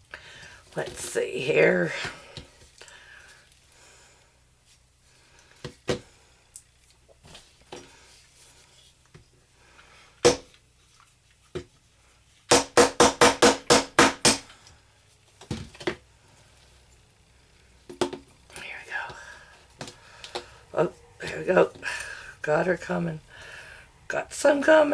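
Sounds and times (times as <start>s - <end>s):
small hammer knocking on block: 12.5s - 14.4s.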